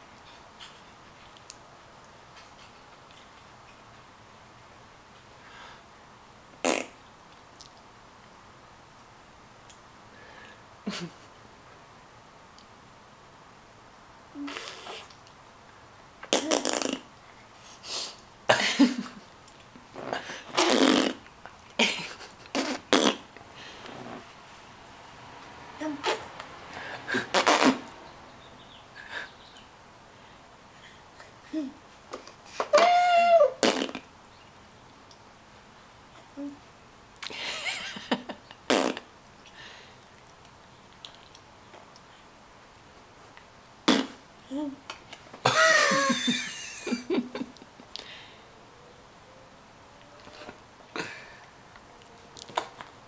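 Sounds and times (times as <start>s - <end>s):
mouth clicks and smacks: 6.6s - 7.9s, 14.5s - 15.4s, 16.2s - 17.2s, 22.4s - 24.2s, 27.1s - 28.0s, 37.2s - 37.4s, 38.5s - 42.1s, 51.7s - 53.0s
child's rattling mouth noise: 25.8s - 26.4s.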